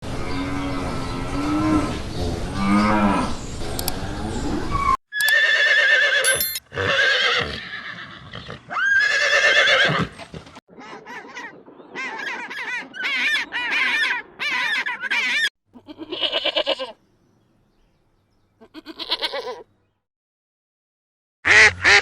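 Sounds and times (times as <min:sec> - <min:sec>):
cow mooing: 0:00.4 - 0:03.4
horse whinnying: 0:04.7 - 0:10.4.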